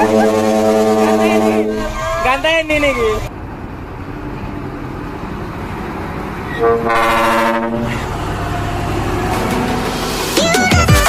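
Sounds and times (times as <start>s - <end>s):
truck air horn: 0.0s - 2.2s, 6.5s - 10.2s
truck engine rumbling: 0.0s - 11.0s.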